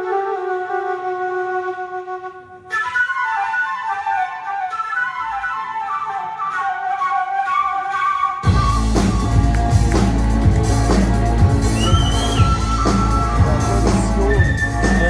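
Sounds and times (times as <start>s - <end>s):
flute melody: 0.0s - 15.0s
rock band with drums and bass: 8.4s - 15.0s.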